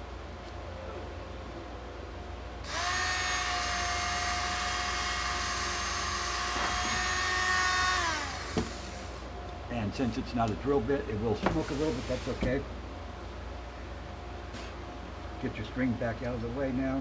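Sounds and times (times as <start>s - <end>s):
electric rotary tool whining: 2.6s - 9.3s.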